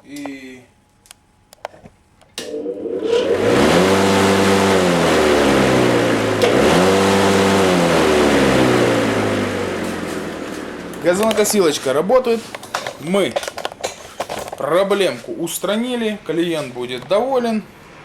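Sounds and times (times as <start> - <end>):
electric lawn mower motor running: 2.4 - 11.6.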